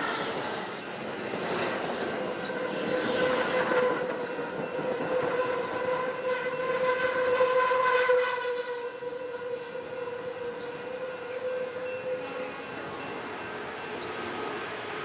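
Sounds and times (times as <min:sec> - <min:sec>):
passenger train running past: 0:00.0 - 0:15.0.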